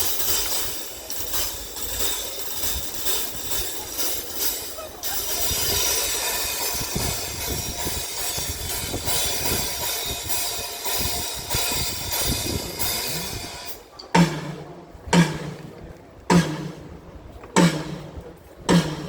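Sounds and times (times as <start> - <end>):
drums and cymbals playing: 0.0 - 15.7, 16.3 - 17.0, 17.6 - 19.0
single low drum hits: 14.1 - 16.9, 17.5 - 19.0.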